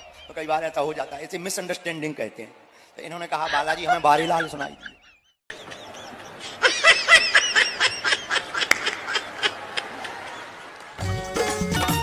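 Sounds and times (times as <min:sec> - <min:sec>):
music with drums: 0:11.0 - 0:12.0.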